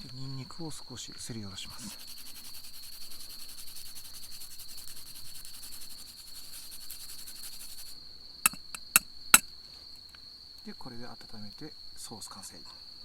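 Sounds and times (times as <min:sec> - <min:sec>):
crickets chirping: 0:00.0 - 0:13.0
garlic being grated by hand: 0:01.8 - 0:09.0
sharp knocks: 0:08.5 - 0:09.0.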